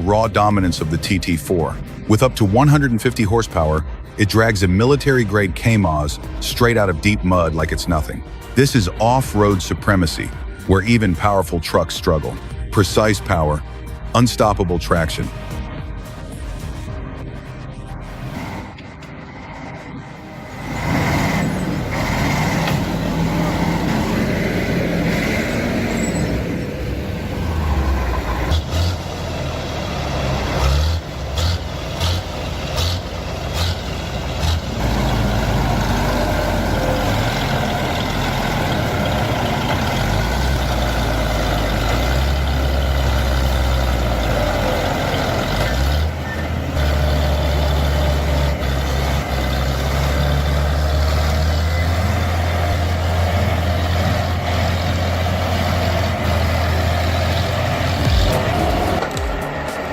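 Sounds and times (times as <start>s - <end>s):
heavy vehicle engine under load: 18.0s - 59.9s.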